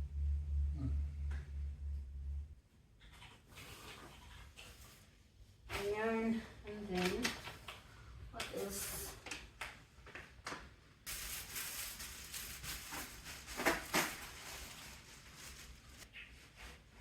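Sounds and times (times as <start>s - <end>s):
rustling and scraping: 11.1s - 17.0s.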